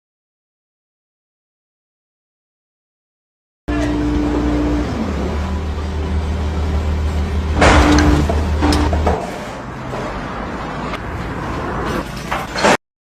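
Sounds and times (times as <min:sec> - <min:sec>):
low engine rumble: 0:03.7 - 0:09.9
loud noisy burst: 0:07.5 - 0:08.9.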